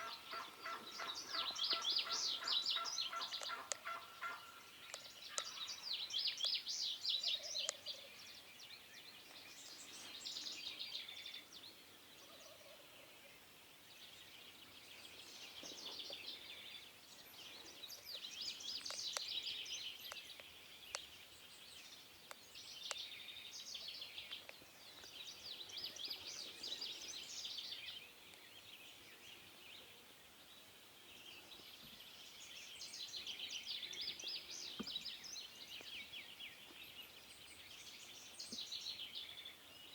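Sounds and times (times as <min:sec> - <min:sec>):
faint lower bird calls: 0:00.0 - 0:11.6
songbirds trilling: 0:00.0 - 0:39.9.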